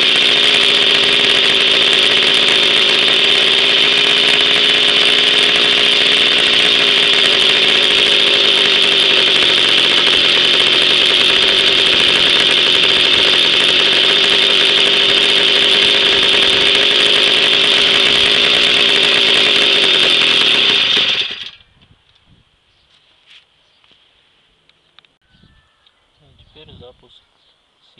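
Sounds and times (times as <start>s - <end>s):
two-stroke moped engine running: 0.0s - 21.7s.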